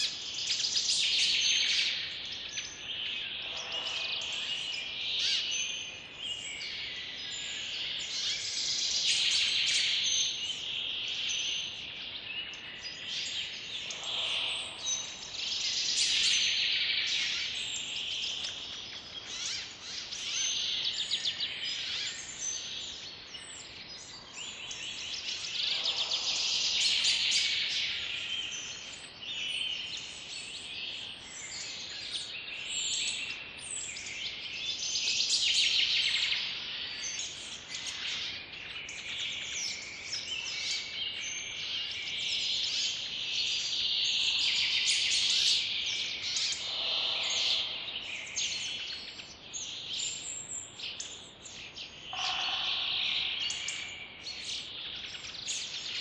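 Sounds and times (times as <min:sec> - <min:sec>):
birds chirping and trilling: 0:00.0 - 0:56.0
lower fuller bird call: 0:46.5 - 0:48.8, 0:52.1 - 0:54.2.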